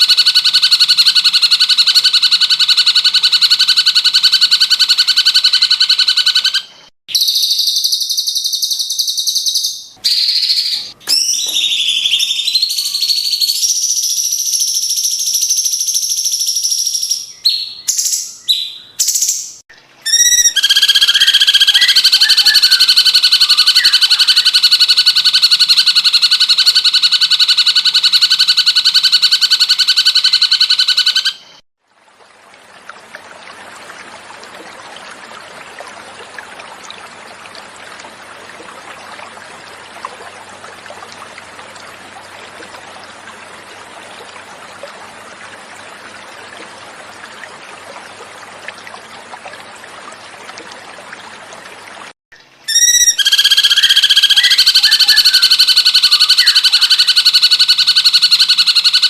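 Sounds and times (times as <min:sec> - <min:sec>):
bird singing rapid trill: 0:05.0 - 0:24.6, 0:52.7 - 0:59.0
flowing water: 0:08.7 - 0:30.9, 0:31.8 - 0:59.0.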